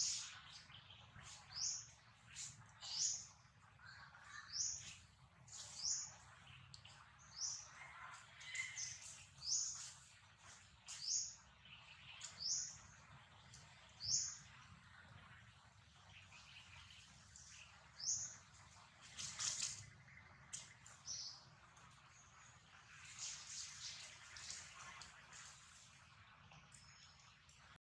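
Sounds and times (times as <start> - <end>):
bird chirping: 0.0 - 15.4.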